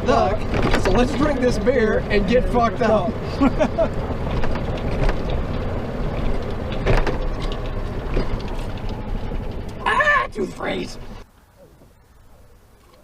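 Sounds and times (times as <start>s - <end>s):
beer cans clicking and cracking: 3.7s - 9.8s.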